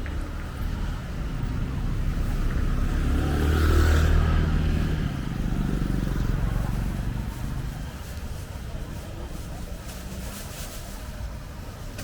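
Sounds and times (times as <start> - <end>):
vehicle engine passing by: 0.5 - 8.2.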